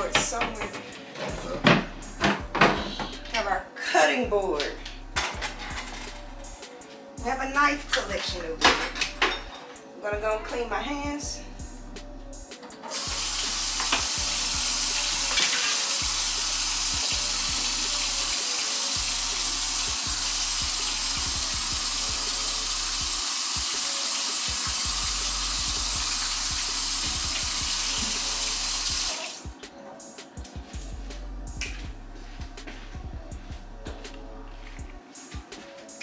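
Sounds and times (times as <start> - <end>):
tap running water: 12.9 - 29.5.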